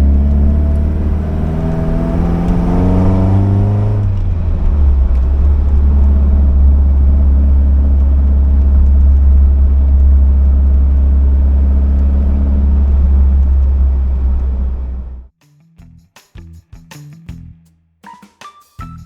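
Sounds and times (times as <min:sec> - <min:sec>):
car engine deep drone: 0:00.0 - 0:15.3.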